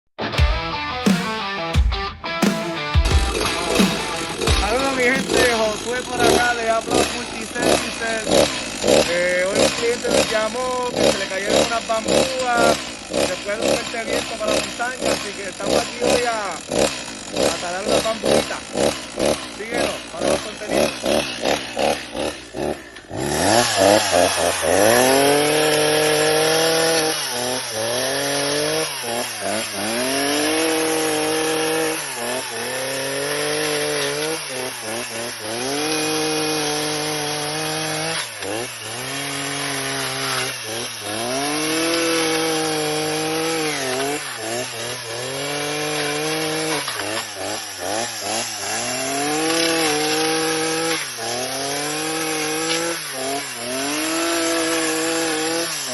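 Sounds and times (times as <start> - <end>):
chainsaw cutting bamboo: 1.0 - 1.7, 2.4 - 55.9.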